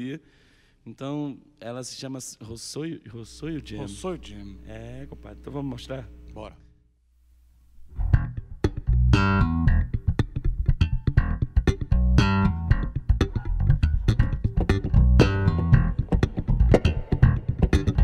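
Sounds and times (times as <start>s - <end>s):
basses playing a groove: 7.8s - 18.0s.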